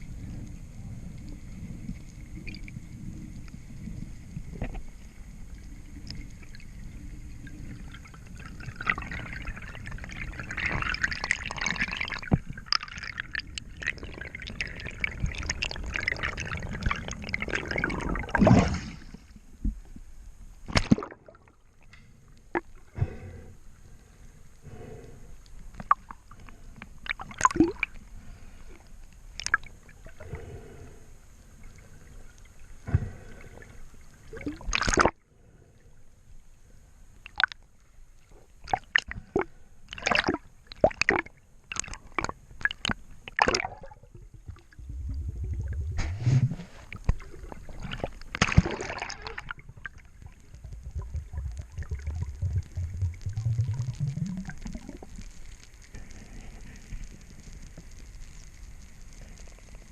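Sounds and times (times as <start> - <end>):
low rushing water: 0.0 - 23.9, 43.4 - 55.2
water gurgling and sloshing: 0.0 - 59.9.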